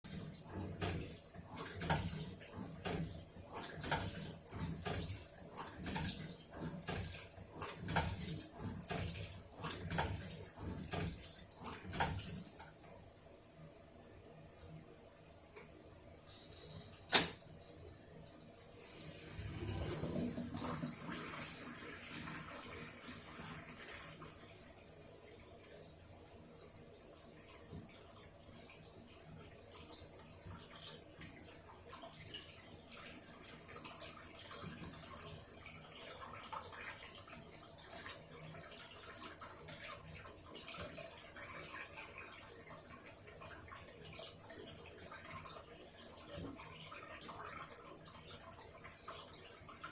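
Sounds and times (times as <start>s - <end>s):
water rushing through machine: 0.0s - 12.8s, 18.6s - 26.2s
water splashing in washing machine: 0.0s - 13.2s, 17.1s - 49.9s
washing machine low hum: 0.0s - 49.9s
washing machine click: 17.0s - 17.5s.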